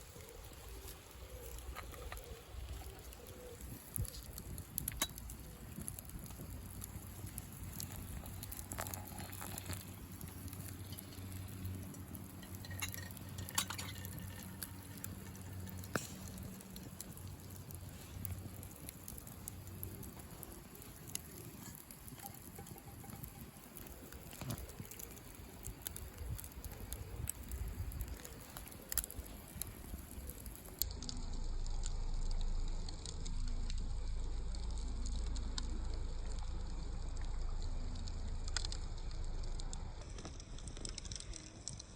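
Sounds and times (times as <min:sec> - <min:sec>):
campfire crackling and popping: 0:00.0 - 0:41.9
faint steady hiss: 0:00.0 - 0:41.9
low rumble: 0:30.8 - 0:41.0.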